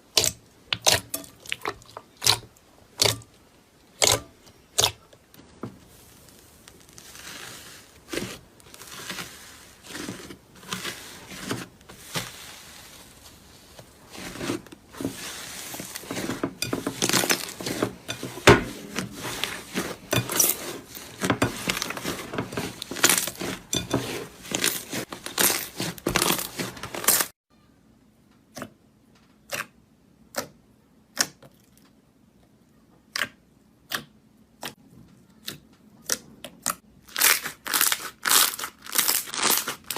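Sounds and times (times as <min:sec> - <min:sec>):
slime crackling and popping: 0:05.9 - 0:16.3, 0:24.4 - 0:27.3, 0:36.6 - 0:39.9.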